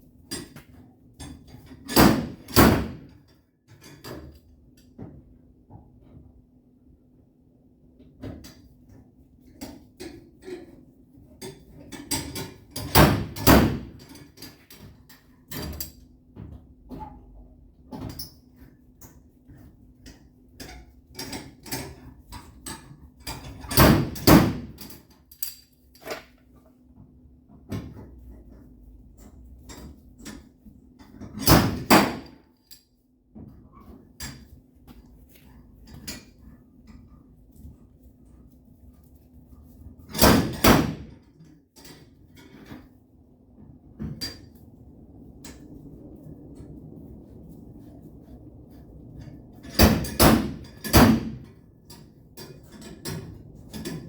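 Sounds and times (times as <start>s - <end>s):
steady low hum: 17.4s - 54.0s.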